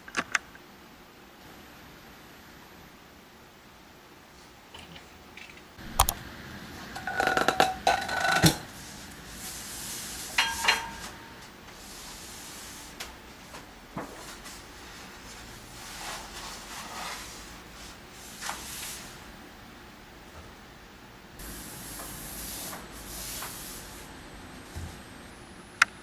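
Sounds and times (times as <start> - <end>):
ringing clinks: 10.4 - 11.2.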